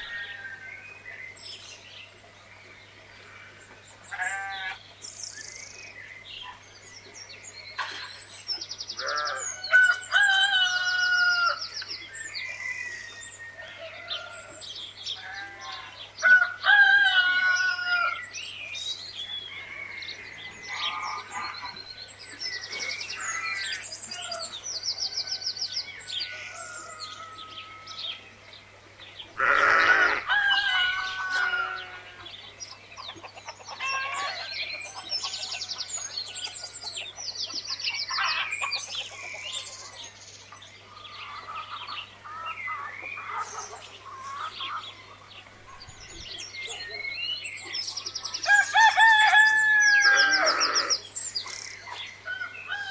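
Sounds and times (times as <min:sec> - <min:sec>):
small birds chirping and trilling: 0:00.0 - 0:52.9
farm animal call: 0:04.1 - 0:04.8, 0:09.0 - 0:11.6, 0:15.2 - 0:18.2, 0:26.2 - 0:28.2, 0:29.3 - 0:32.4, 0:33.6 - 0:35.5, 0:48.4 - 0:52.9.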